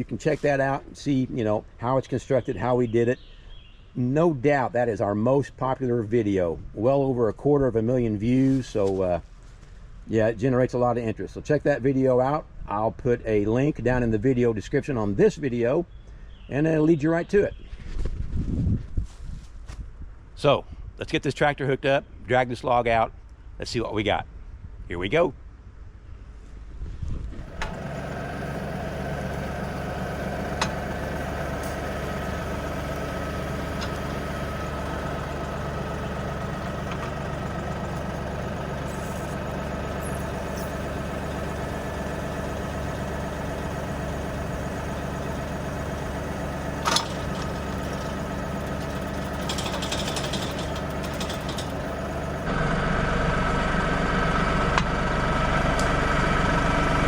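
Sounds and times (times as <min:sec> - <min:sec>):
tractor diesel engine running: 0:27.4 - 0:57.0.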